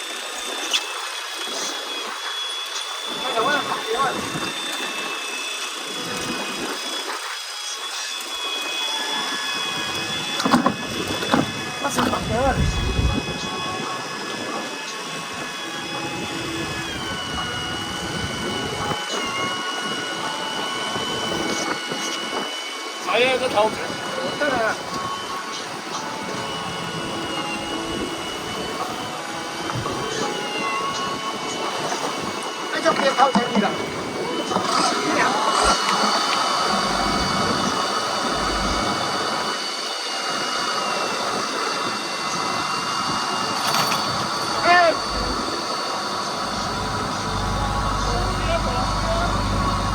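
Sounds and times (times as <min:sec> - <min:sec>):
high motor whine: 0:00.0 - 0:49.9
wind and water rushing: 0:08.2 - 0:47.8
boat engine running: 0:08.7 - 0:40.4, 0:43.0 - 0:49.9.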